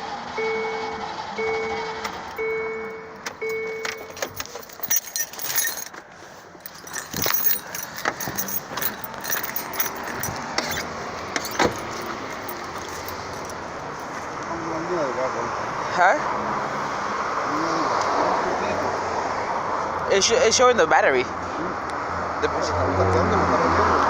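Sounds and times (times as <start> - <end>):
keys jangling in ignition: 2.0 - 2.5, 3.3 - 14.1.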